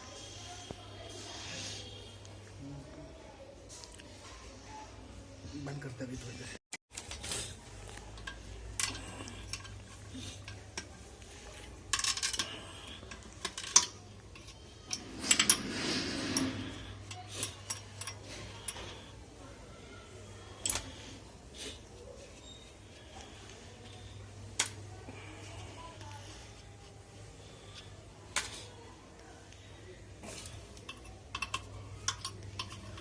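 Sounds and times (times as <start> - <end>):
metal tools clinking and knocking: 11.8 - 19.0, 30.4 - 33.0
metal scraping: 11.9 - 19.0.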